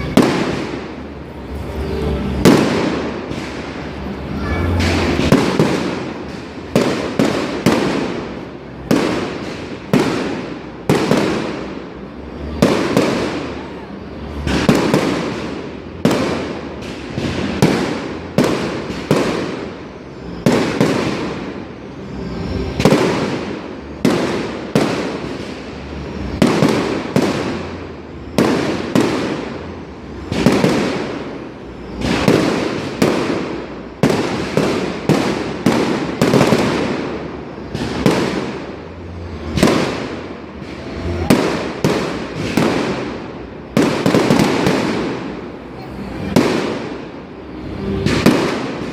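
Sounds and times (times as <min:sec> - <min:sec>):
firework shells bursting: 0:02.4 - 0:12.0.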